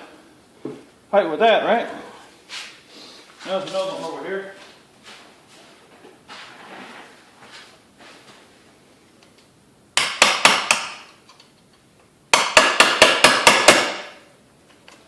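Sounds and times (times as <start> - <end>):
hammer striking metal: 10.0 - 11.1, 12.3 - 14.2.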